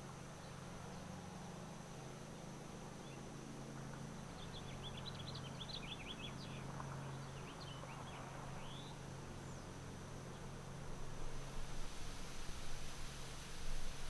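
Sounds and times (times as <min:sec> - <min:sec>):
small birds chirping: 0:04.3 - 0:09.7.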